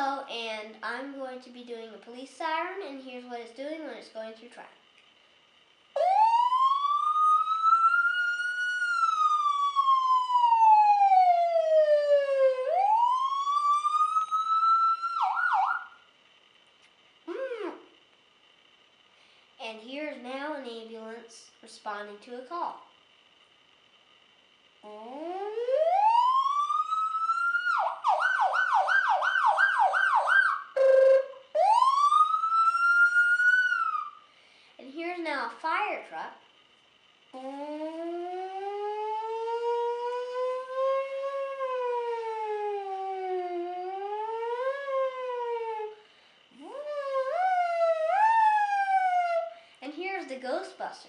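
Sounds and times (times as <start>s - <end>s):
person imitating a police siren: 6.0s - 16.0s, 17.3s - 18.0s, 24.8s - 34.3s, 37.4s - 49.6s.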